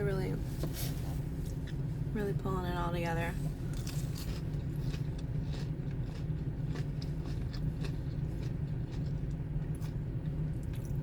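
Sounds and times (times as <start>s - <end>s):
person chewing crunchy food: 3.6s - 11.0s.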